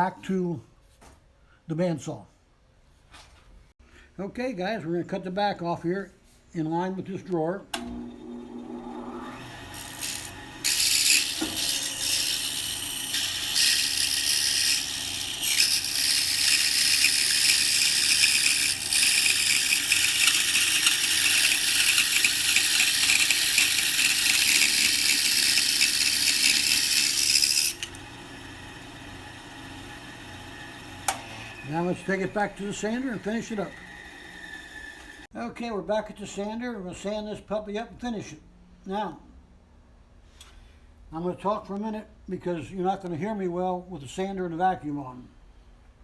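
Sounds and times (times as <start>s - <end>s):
bandsaw cutting wood: 7.8s - 35.3s
bandsaw running: 7.8s - 35.3s.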